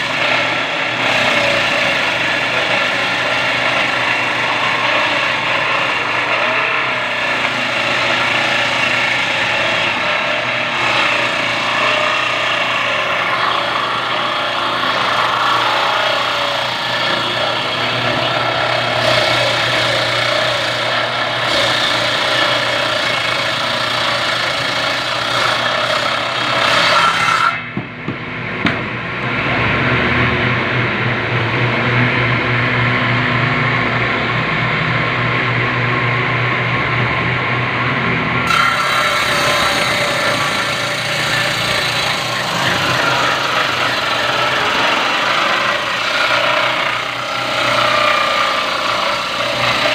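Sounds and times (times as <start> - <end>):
electric power tool working wood: 0.0 - 27.6, 38.4 - 49.9.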